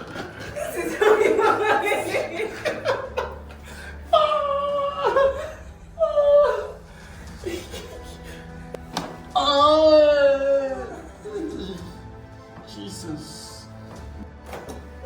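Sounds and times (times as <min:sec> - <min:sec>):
person laughing: 0:00.0 - 0:03.6, 0:07.4 - 0:08.5.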